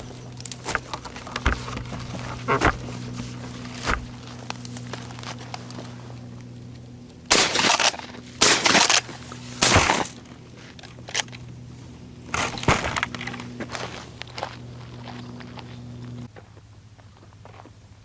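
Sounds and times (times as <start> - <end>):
shotgun shots: 7.3 - 10.2.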